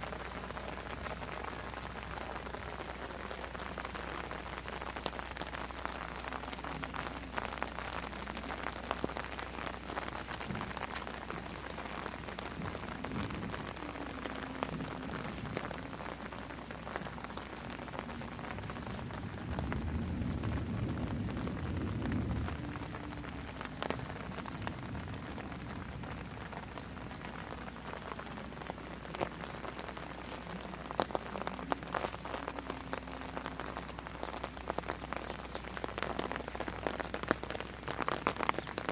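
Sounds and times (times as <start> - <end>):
raindrops ticking close by: 0.0 - 38.9
steady rain falling: 0.0 - 38.9
low rumbling sound: 6.6 - 35.7.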